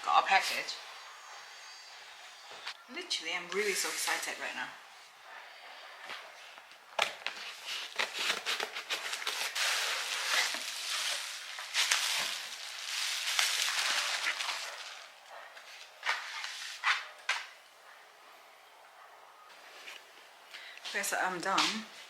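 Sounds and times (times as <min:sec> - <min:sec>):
packaging crinkling and rustling: 0:07.0 - 0:15.1.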